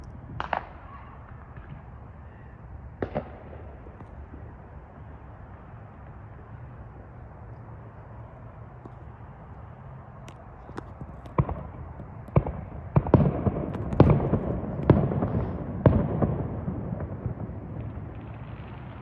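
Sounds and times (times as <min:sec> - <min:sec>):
steady low rumble: 0:00.0 - 0:19.0
distant fireworks bangs: 0:00.2 - 0:06.6, 0:10.3 - 0:19.0.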